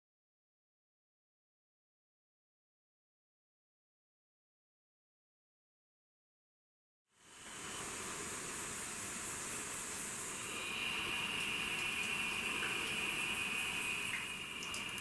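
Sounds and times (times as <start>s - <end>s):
hissing outdoor ambience: 7.2s - 15.0s.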